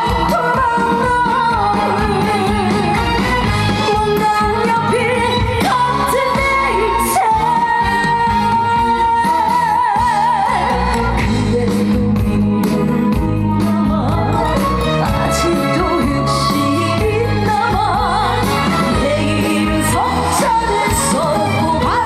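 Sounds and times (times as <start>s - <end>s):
backing track music: 0.0s - 22.0s
woman singing: 0.0s - 22.0s.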